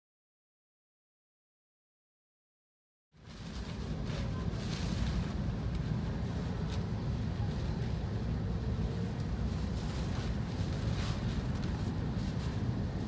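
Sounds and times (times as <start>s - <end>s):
wind and rain: 3.3s - 13.0s.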